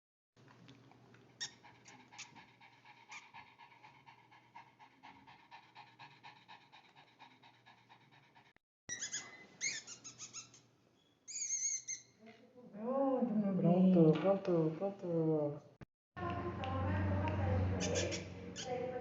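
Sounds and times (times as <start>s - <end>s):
dog breathing noisily: 1.4s - 8.6s
high squeaky sounds: 8.9s - 12.2s.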